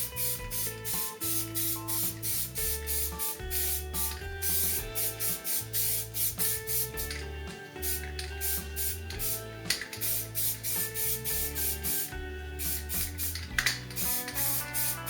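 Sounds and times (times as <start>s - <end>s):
bass and keyboard notes: 0.0s - 15.0s
hissy hi-hat beat: 0.0s - 15.0s.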